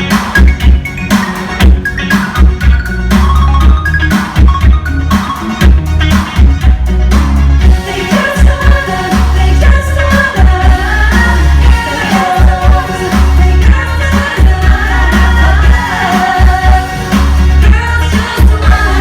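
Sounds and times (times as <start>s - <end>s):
pulsing bass beat: 0.0s - 19.0s
person singing: 7.7s - 19.0s.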